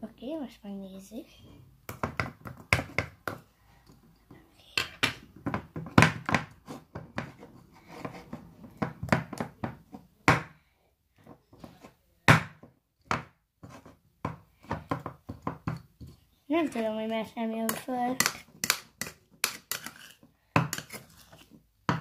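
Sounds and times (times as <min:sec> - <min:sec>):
utensil scraping in slime: 0:17.7 - 0:21.6.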